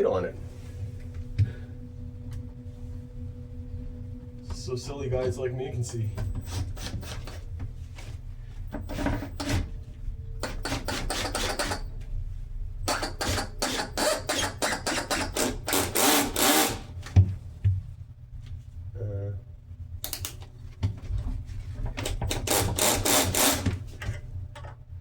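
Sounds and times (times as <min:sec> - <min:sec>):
cordless drill driving screws: 0:12.9 - 0:16.8, 0:22.3 - 0:23.8.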